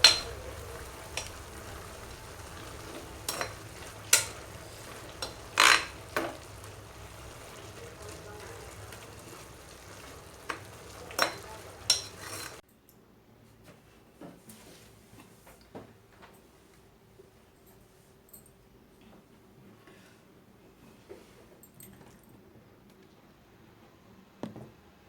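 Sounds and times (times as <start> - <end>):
utensil knocking against pan: 0.0 - 8.2
food sizzling in a pan: 0.0 - 12.6.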